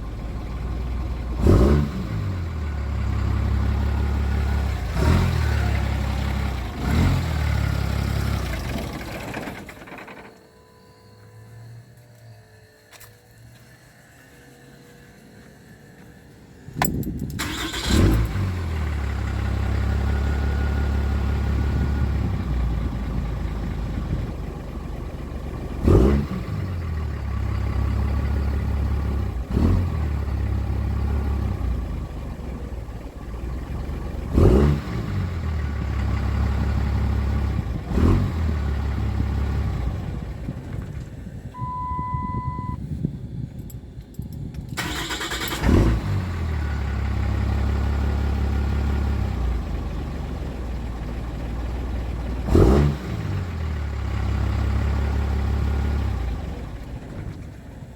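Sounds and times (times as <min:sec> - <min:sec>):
diesel engine idling roughly: 0:02.4 - 0:10.5
steady beep: 0:41.6 - 0:42.8.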